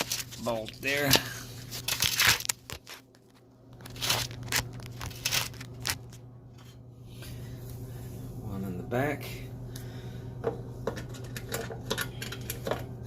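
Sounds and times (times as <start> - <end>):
steady low hum: 0.0 - 13.0
metal parts clicking and scraping: 11.0 - 12.8.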